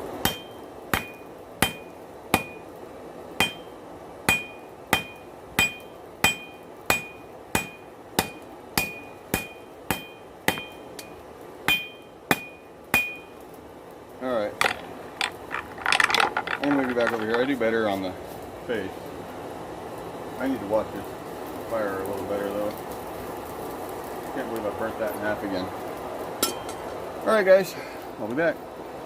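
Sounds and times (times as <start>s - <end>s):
hammer striking steel on anvil: 0.2s - 2.7s, 3.4s - 13.4s, 26.4s - 26.9s.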